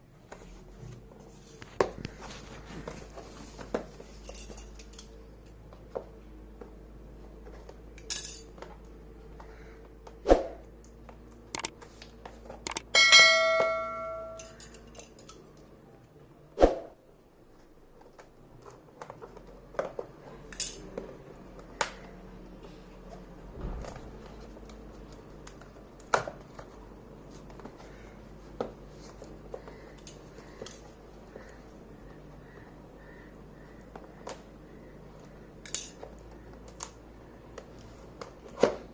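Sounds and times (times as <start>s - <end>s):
metal struck and ringing: 12.9s - 14.6s.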